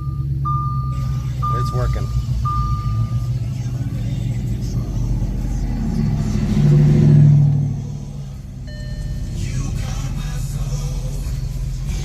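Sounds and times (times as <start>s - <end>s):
high electronic chime tone: 0.0s - 3.3s, 8.7s - 9.3s
car engine revving: 0.0s - 12.0s.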